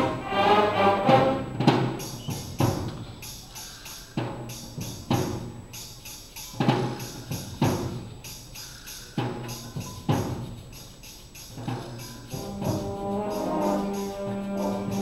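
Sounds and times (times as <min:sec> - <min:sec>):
brass section sustained chords: 0:00.0 - 0:01.7, 0:12.3 - 0:15.0
accented percussion hits: 0:00.0 - 0:15.0
tambourine shaking: 0:02.0 - 0:15.0.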